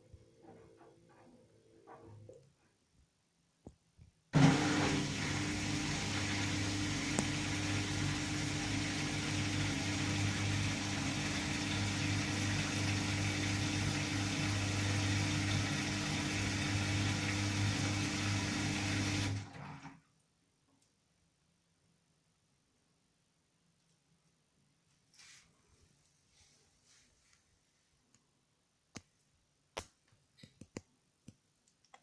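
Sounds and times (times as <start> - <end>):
washing machine motor hum: 4.4 - 20.0.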